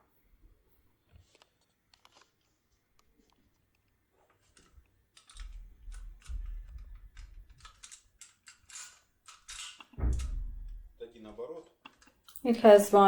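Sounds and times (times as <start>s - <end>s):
metallic lock clicks: 4.5s - 10.9s
dull handling thumps: 9.9s - 11.0s.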